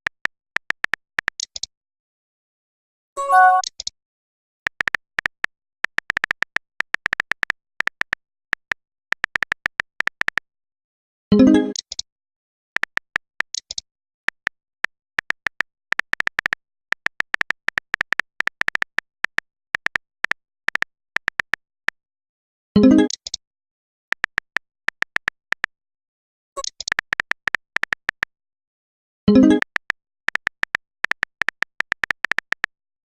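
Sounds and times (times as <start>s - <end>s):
message alert tone: 3.2s - 3.7s.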